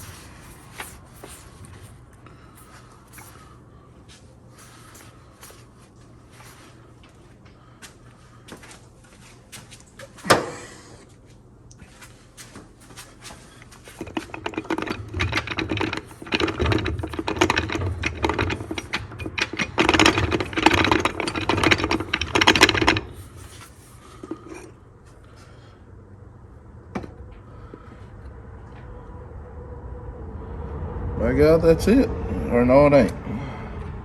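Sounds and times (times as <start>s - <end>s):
metal clutch plates clattering: 13.7s - 24.8s.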